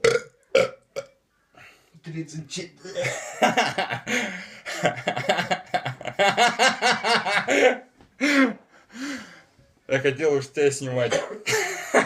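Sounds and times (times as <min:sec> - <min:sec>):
hearty laughter: 0:02.8 - 0:08.6, 0:11.4 - 0:12.0.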